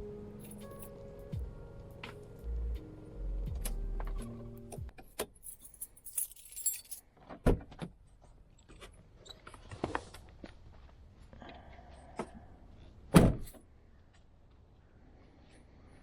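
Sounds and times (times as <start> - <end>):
keys jangling: 0.4 - 0.9, 5.2 - 7.0.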